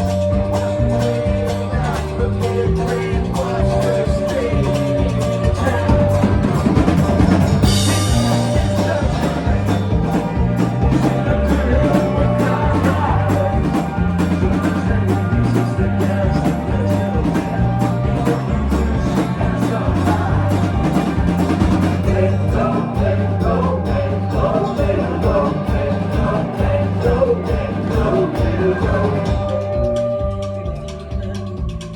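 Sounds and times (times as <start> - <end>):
country-rock band playing: 0.0 - 31.9.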